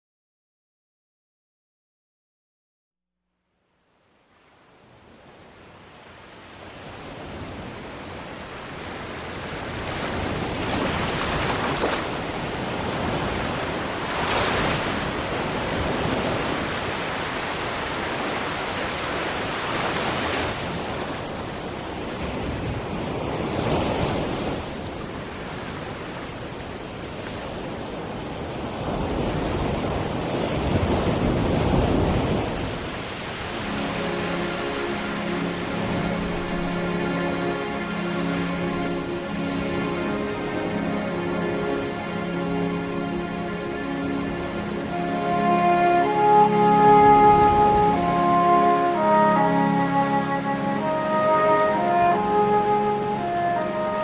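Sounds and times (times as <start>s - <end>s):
sea waves breaking: 4.3s - 54.0s.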